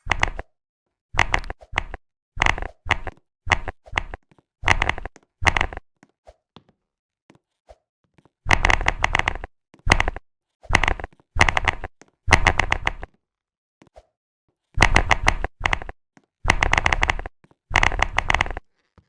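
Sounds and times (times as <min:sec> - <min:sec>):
computer keyboard typing: 0:00.0 - 0:00.5, 0:01.2 - 0:05.8, 0:08.5 - 0:13.1, 0:14.8 - 0:18.6.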